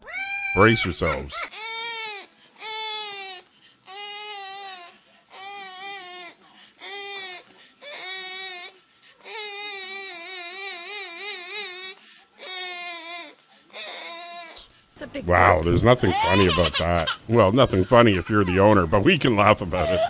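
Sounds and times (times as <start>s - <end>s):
parakeet mimicking crying baby: 0.0s - 14.7s, 15.9s - 17.3s.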